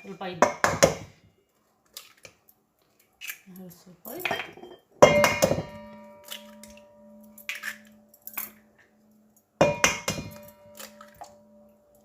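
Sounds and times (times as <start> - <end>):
bowl ringing: 4.3 - 8.6, 9.6 - 12.0
eggs cracking against a bowl: 7.4 - 8.0.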